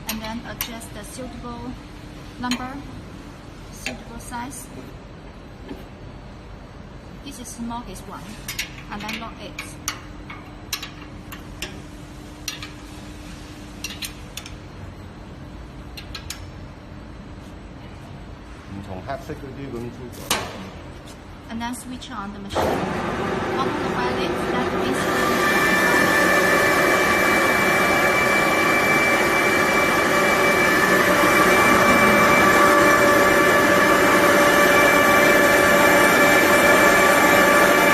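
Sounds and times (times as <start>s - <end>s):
low machine tone: 21.4s - 37.9s
industrial grinder whining: 22.6s - 37.9s.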